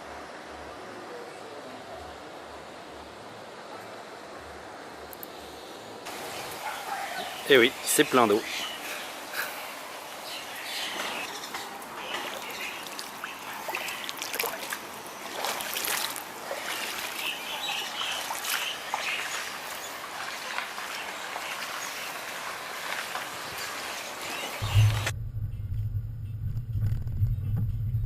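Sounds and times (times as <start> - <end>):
birds chirping: 5.6 - 22.4, 23.0 - 25.1
rainwater trickling: 6.0 - 25.1
water drips and splashes: 6.0 - 25.1.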